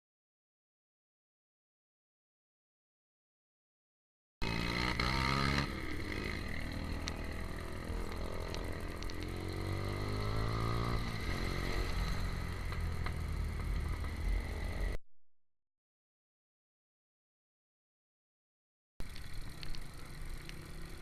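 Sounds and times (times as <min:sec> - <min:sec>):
motorcycle engine running: 0:04.4 - 0:15.0, 0:19.0 - 0:21.0.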